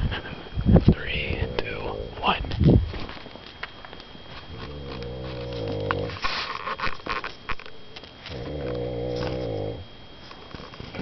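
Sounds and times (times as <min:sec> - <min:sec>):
person snoring: 0:04.6 - 0:06.2, 0:08.3 - 0:09.8.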